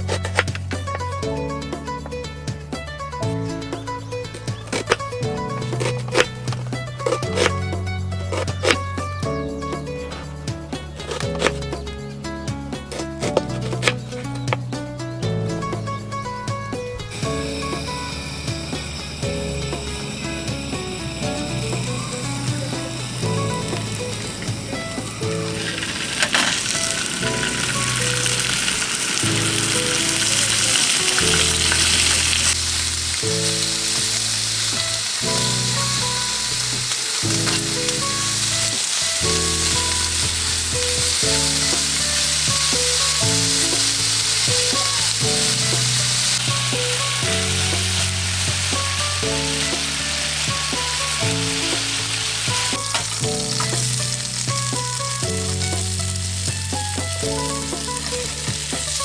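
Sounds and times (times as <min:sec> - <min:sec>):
background music with bass line: 0:00.0 - 0:59.0
food sizzling in a pan: 0:04.5 - 0:08.9, 0:17.1 - 0:59.0.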